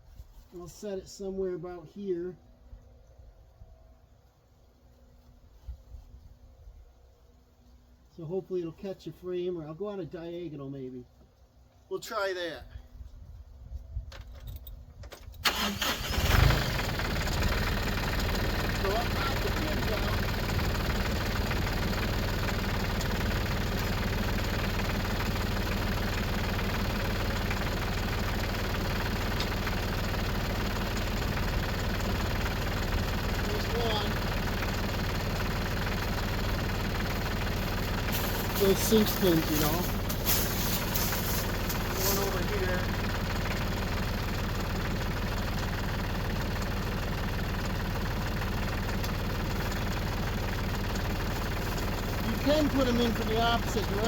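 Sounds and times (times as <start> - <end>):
tractor diesel engine idling: 15.4 - 54.0.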